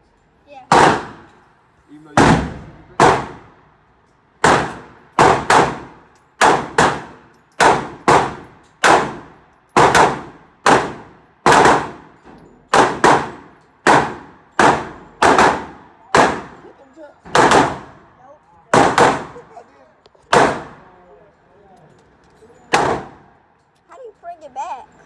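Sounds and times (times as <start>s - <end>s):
gunshots: 0.7s - 1.3s, 2.1s - 3.6s, 4.4s - 16.7s, 17.3s - 18.1s, 18.7s - 19.5s, 20.3s - 20.9s, 22.7s - 23.3s.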